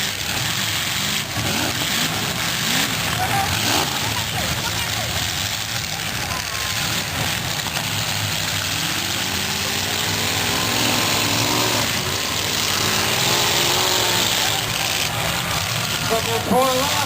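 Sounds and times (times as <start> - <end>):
car engine revving: 0.0 - 17.0
car engines running: 0.0 - 17.0.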